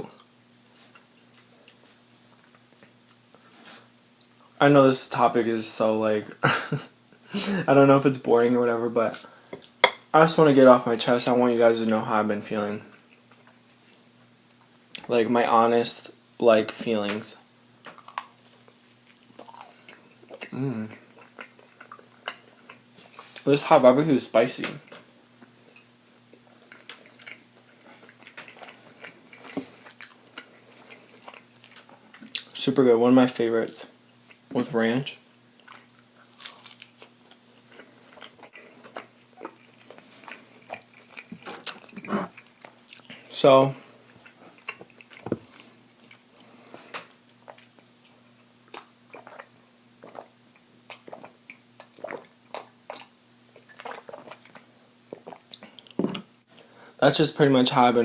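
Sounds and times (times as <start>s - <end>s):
person chewing wet food: 17.8s - 23.2s, 24.8s - 32.5s, 35.5s - 43.3s, 44.0s - 56.7s
mouth chewing wet smacks: 47.3s - 56.2s.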